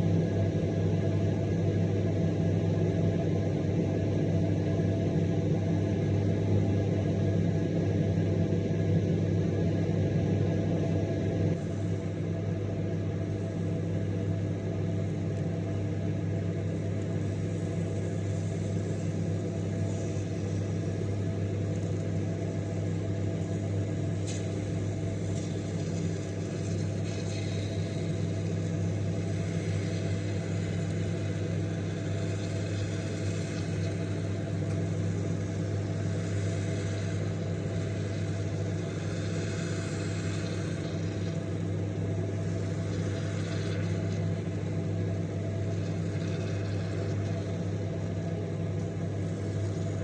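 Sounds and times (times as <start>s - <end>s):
microwave oven humming: 0.0s - 50.0s
faint clicks and fizzing hiss: 11.5s - 50.0s.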